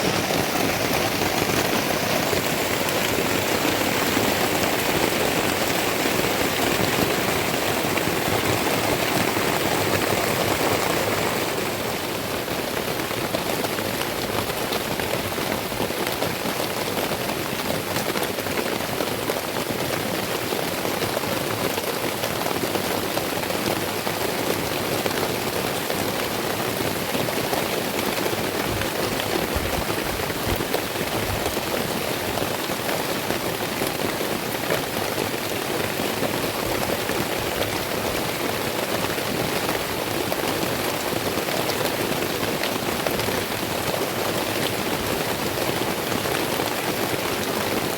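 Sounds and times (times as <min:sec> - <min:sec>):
heavy rain pouring: 0:00.0 - 0:47.9.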